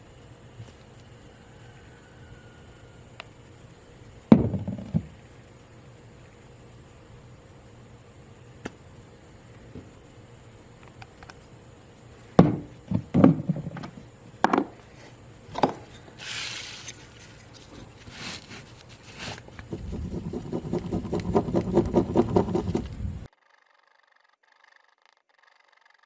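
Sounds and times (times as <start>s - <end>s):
objects knocking and clattering: 4.3s - 5.1s, 12.4s - 14.8s, 15.5s - 16.0s
epoxy stirring on plastic: 16.2s - 23.3s.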